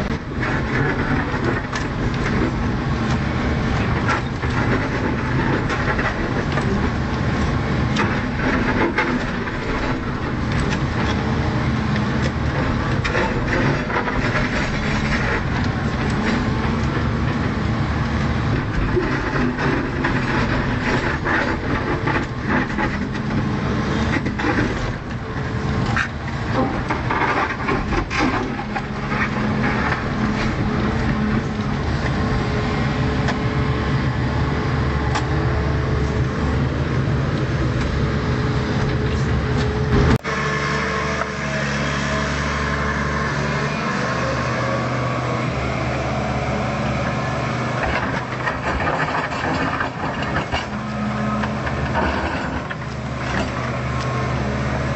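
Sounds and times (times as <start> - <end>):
excavator diesel engine running: 0.0 - 54.9
sharp knocks and clatter: 0.1 - 11.3, 18.4 - 32.2, 47.6 - 54.2.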